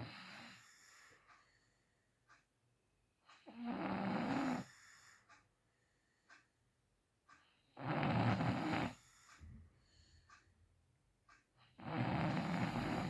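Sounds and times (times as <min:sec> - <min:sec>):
person snoring: 0:03.5 - 0:04.7, 0:07.8 - 0:09.0, 0:11.8 - 0:13.0.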